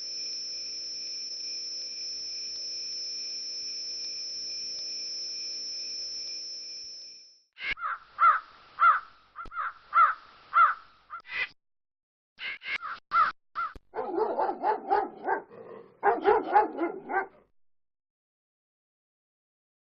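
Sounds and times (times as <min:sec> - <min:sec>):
crows cawing: 0:07.8 - 0:11.2, 0:12.8 - 0:13.8
dog barking rapidly: 0:14.0 - 0:17.4.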